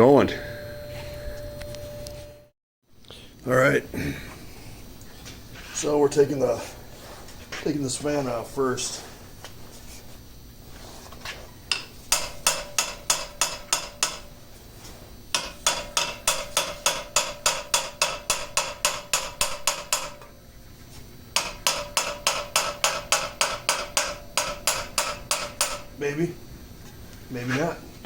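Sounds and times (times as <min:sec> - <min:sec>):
hammer blows on metal: 0:11.7 - 0:14.5, 0:15.4 - 0:20.4, 0:21.4 - 0:26.0.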